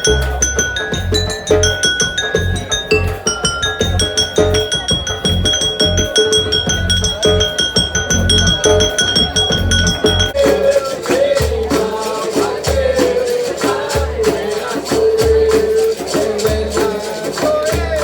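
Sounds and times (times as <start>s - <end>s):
low bass line: 0.0s - 10.4s
bell-like notes: 0.0s - 11.1s
percussive beat: 0.0s - 18.0s.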